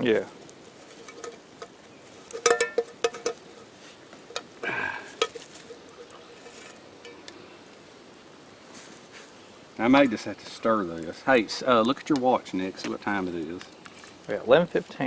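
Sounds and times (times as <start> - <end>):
cookware scraping: 0.8 - 7.3
metal cookware clinking: 1.0 - 3.4, 4.3 - 7.3.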